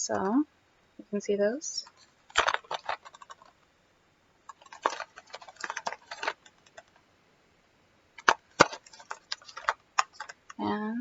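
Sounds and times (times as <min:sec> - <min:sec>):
plastic makeup cases clicking: 0:01.9 - 0:03.6, 0:04.5 - 0:07.0, 0:08.2 - 0:10.6.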